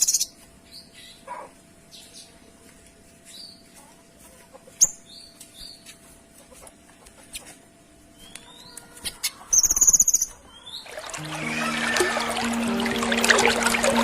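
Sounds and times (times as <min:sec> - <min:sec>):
songbird chirping and trilling: 0:08.1 - 0:14.0
music with trickling water: 0:10.8 - 0:14.0.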